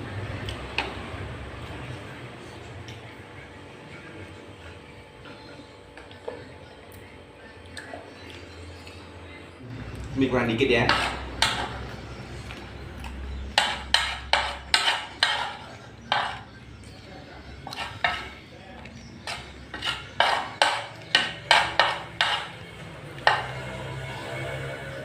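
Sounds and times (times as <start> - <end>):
cutlery scraping against a plate: 10.7 - 16.7, 17.5 - 23.8.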